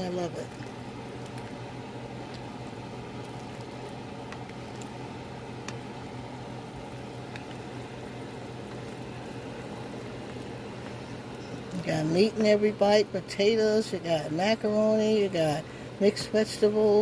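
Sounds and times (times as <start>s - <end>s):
low steady hum: 0.0s - 17.0s
soup bubbling with pops: 0.5s - 11.7s.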